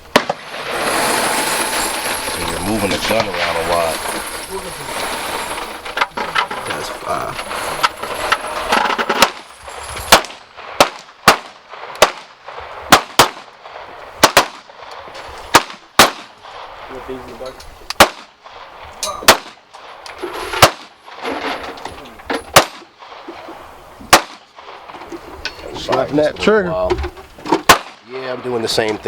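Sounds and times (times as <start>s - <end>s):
handgun shots with echo: 27.7s - 28.0s.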